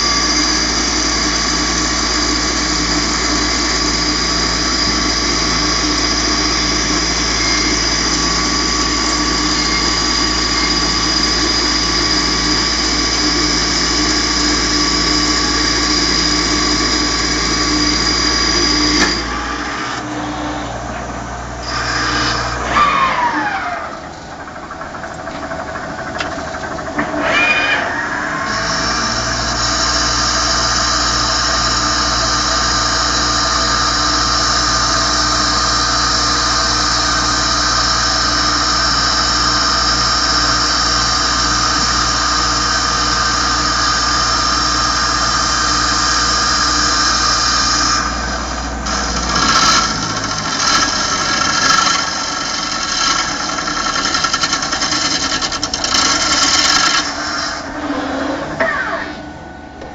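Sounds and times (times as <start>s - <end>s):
lathe spindle whining: 0.0s - 59.9s.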